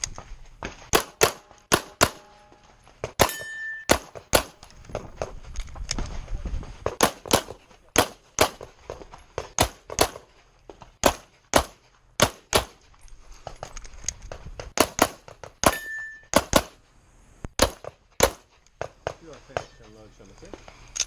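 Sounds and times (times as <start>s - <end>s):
pistol shots: 0.9s - 2.4s, 3.2s - 4.6s, 7.0s - 8.7s, 9.6s - 10.2s, 11.0s - 12.8s, 14.8s - 16.8s, 17.6s - 18.4s
brief ringing tone: 15.7s - 16.3s.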